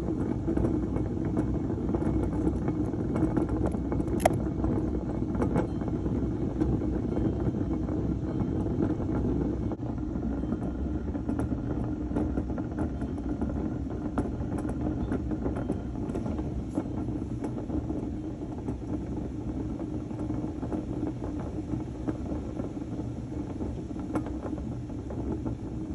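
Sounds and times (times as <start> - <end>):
scooter engine rumble: 2.3 - 5.0
wheel bearing clicks and rattles: 3.7 - 4.4.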